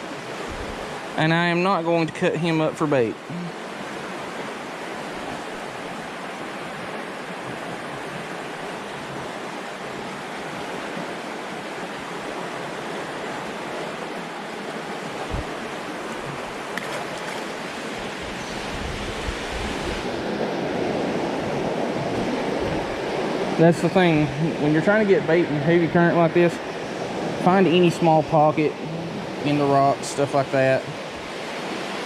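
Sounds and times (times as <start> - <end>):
wind rumbling on microphone: 0.0 - 1.1, 4.0 - 27.9
water rushing over rocks: 0.0 - 32.0.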